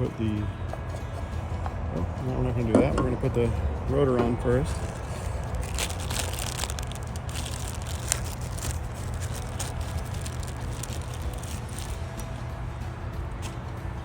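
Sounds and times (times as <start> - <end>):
small parts clicking and rustling: 4.6 - 12.4.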